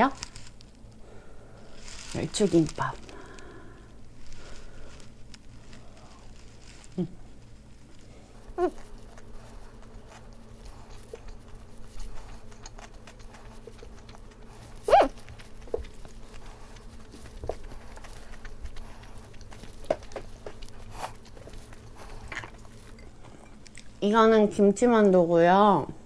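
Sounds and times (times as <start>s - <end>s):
faint steady hum: 0.0s - 26.0s
chewing smacks and clicks: 8.4s - 24.0s.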